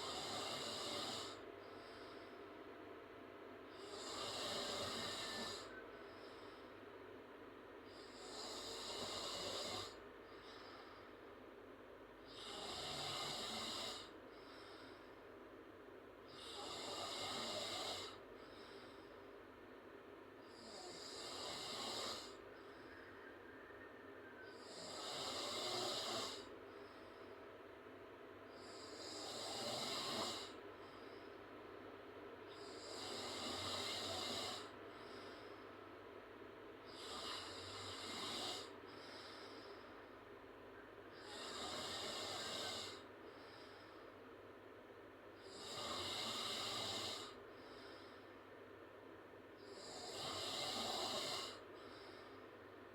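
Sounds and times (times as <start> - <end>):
girl snoring loudly: 0.0 - 1.4, 3.8 - 5.7, 8.0 - 10.0, 12.4 - 14.1, 16.3 - 18.2, 20.6 - 22.4, 24.6 - 26.5, 28.6 - 30.6, 32.6 - 34.7, 36.9 - 38.7, 41.2 - 43.0, 45.4 - 47.4, 49.6 - 51.6
soft breath: 0.0 - 2.9, 3.6 - 7.2, 7.8 - 11.6, 13.4 - 15.5, 16.3 - 19.6, 22.2 - 27.7, 30.4 - 31.6, 32.5 - 36.0, 36.8 - 44.3, 46.5 - 48.6, 49.6 - 52.7.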